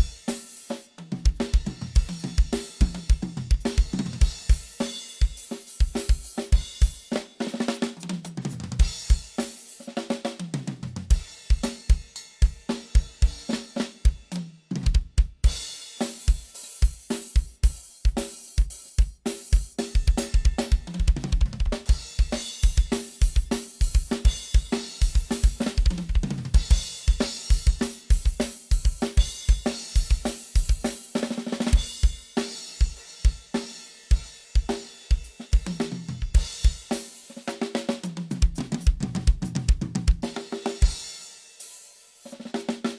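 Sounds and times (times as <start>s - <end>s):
drum kit playing: 0.0s - 42.9s
drum fills on toms: 10.5s - 41.2s
rapid bass drum strokes: 14.9s - 33.4s, 38.2s - 41.2s.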